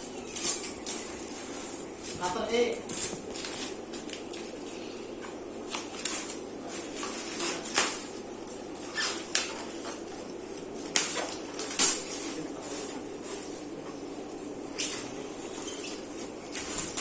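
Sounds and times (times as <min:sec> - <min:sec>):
plastic wrapping crinkling: 0:00.0 - 0:13.0.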